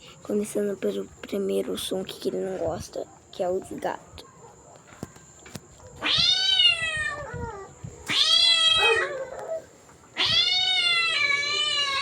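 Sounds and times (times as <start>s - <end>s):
cat meowing: 6.0s - 9.6s, 10.2s - 12.0s.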